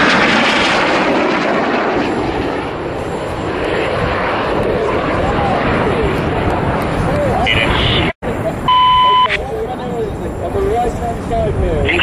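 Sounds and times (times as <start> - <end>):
jets roaring past: 0.0 - 8.8.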